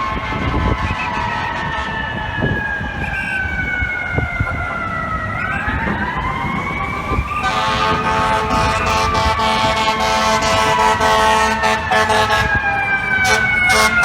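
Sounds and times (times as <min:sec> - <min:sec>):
fire truck siren wailing: 0:00.0 - 0:14.0
truck rumble: 0:00.0 - 0:14.0
air horn blast: 0:07.3 - 0:12.6, 0:13.2 - 0:14.0.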